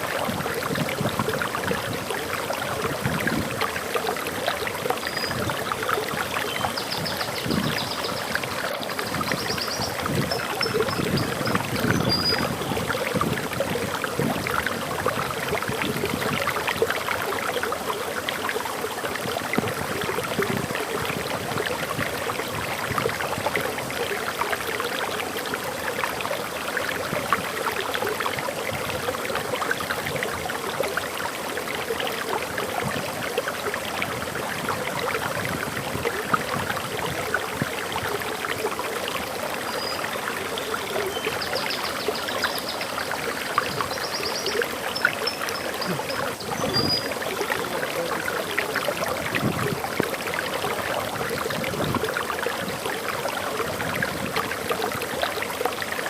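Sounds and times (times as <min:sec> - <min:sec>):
bird chirp: 0:09.1 - 0:12.6, 0:43.7 - 0:47.1
waterfall splashing: 0:36.4 - 0:56.0.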